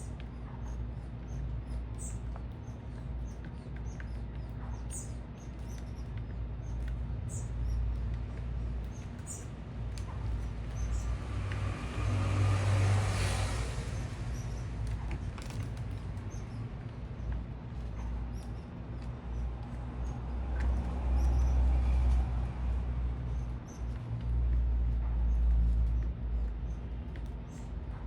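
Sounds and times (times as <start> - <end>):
city traffic rumble: 0.0 - 28.0
small birds chirping: 0.0 - 28.0
vehicle passing close by: 10.6 - 15.4.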